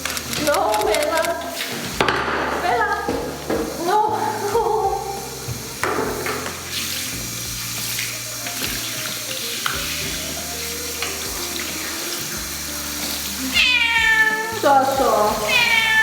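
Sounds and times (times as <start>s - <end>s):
water running into bathtub: 0.0s - 16.0s
knock: 2.0s - 3.8s, 5.8s - 6.5s.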